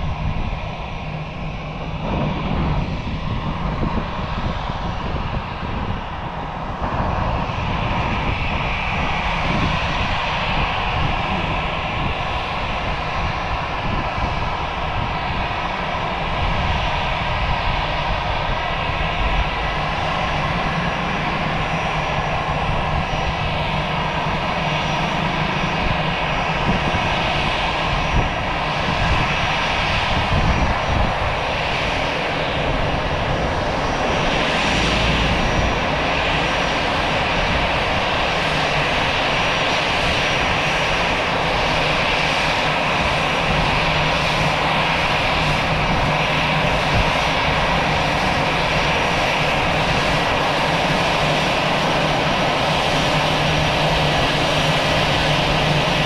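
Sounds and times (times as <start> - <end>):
jet engines roaring and whining: 0.0 - 56.0.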